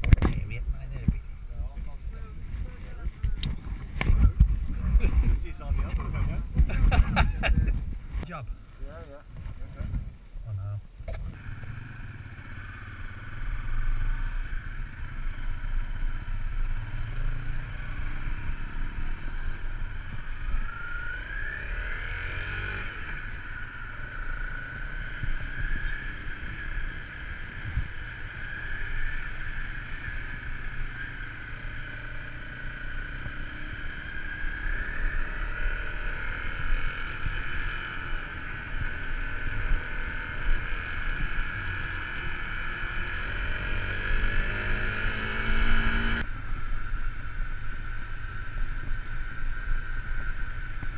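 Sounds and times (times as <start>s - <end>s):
low rumble: 0.0s - 11.4s
vehicle engine whine: 0.0s - 50.9s.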